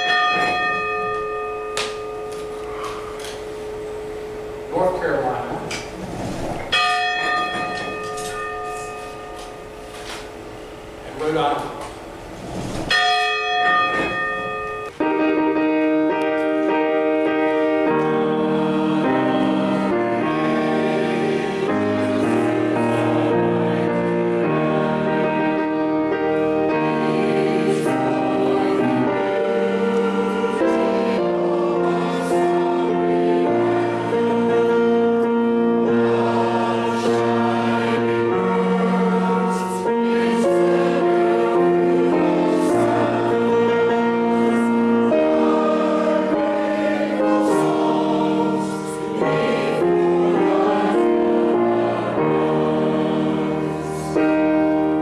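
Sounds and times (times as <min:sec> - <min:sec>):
choir singing sustained chords: 0:00.0 - 0:06.0, 0:07.1 - 0:55.0.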